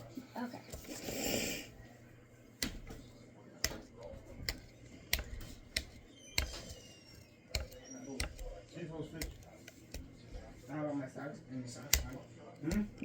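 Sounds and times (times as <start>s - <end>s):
sharp clicks and taps: 3.6s - 6.8s, 7.5s - 8.5s, 9.1s - 10.2s, 11.8s - 13.0s.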